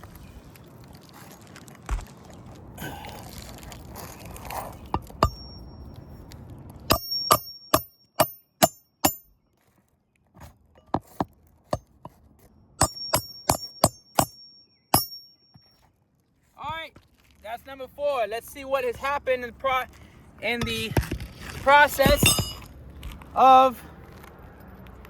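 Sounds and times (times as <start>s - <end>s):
hammer striking a nail: 5.0s - 5.6s, 6.9s - 9.3s, 12.8s - 15.3s, 22.0s - 22.7s.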